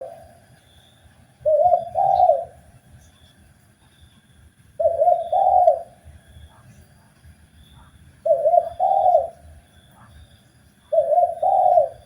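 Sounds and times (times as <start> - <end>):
dove cooing: 0.0 - 0.4, 1.4 - 2.7, 4.8 - 6.7, 7.7 - 10.2, 10.9 - 12.0.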